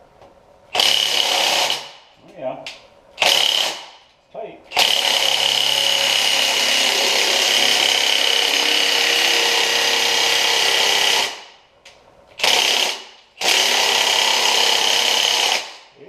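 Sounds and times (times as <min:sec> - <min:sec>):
impact wrench hammering: 0:00.7 - 0:02.1, 0:03.2 - 0:04.1.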